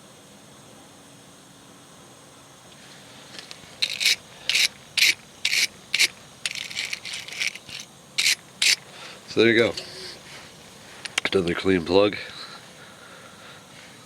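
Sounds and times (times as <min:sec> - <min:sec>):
rasping scrubbing on spark plug: 0:03.4 - 0:11.3.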